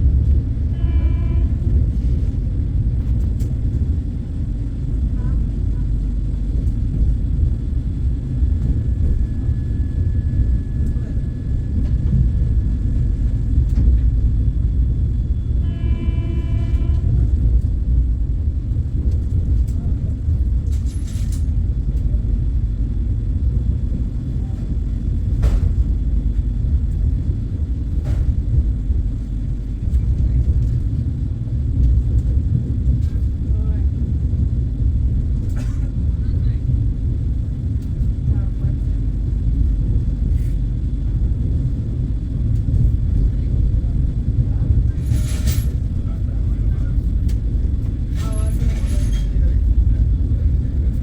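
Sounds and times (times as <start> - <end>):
electric train rumbling: 0.0 - 51.0.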